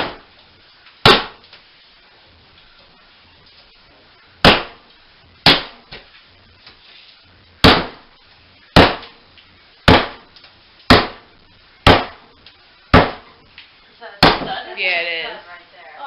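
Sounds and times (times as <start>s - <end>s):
hammer striking a wall: 7.6s - 8.0s, 9.9s - 10.2s, 10.9s - 11.2s, 11.8s - 12.2s, 12.9s - 13.3s.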